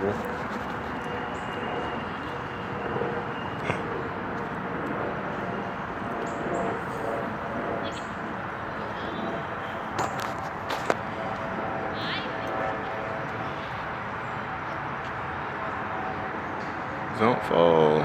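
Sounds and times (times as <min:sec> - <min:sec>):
passing traffic: 0:00.0 - 0:18.0.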